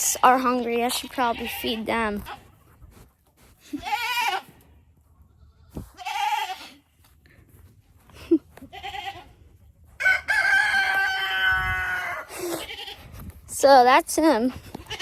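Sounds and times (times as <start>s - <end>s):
goats bleating: 3.7s - 4.6s, 5.9s - 6.8s, 8.6s - 9.4s, 11.3s - 13.0s
rooster crowing: 10.0s - 12.3s.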